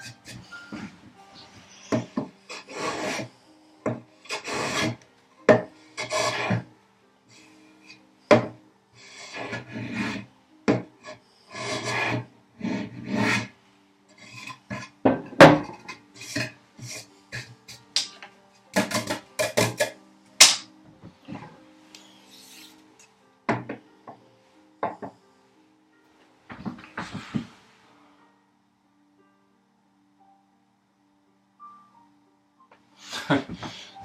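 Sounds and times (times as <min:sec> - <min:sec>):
hand plane rasping on wood: 0:02.0 - 0:03.3, 0:04.2 - 0:05.0, 0:06.0 - 0:06.7, 0:09.1 - 0:10.2, 0:11.5 - 0:13.5.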